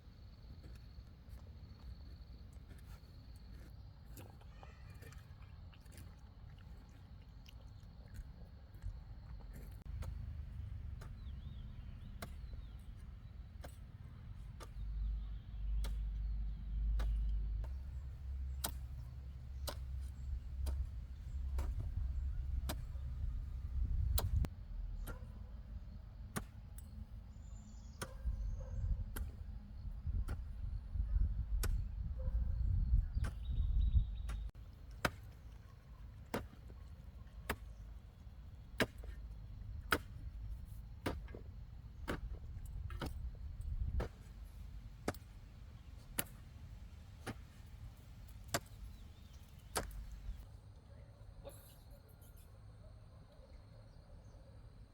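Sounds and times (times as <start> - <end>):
low uneven rumble: 6.8 - 26.2.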